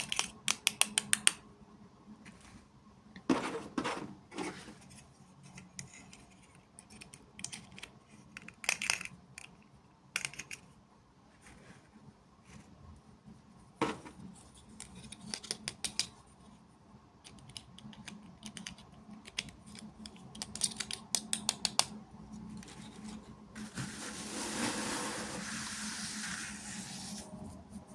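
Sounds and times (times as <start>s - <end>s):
plastic toy pieces clicking: 0.0s - 1.4s, 6.1s - 10.7s, 17.2s - 22.0s.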